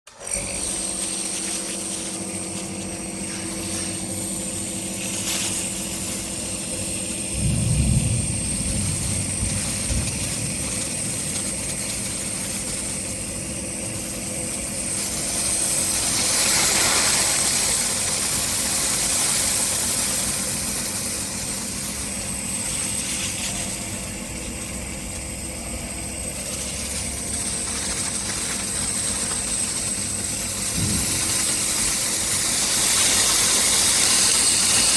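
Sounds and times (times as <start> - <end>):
compressor motor hum with whine: 0.1 - 34.9
low rumble: 7.2 - 11.8, 30.7 - 32.6
hiss: 14.9 - 23.8, 27.8 - 34.9.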